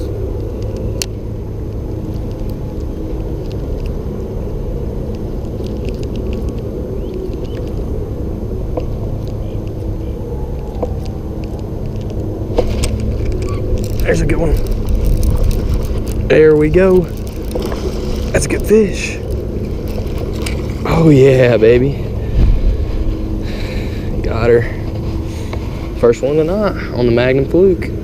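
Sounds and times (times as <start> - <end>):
low rumble: 0.0 - 28.0.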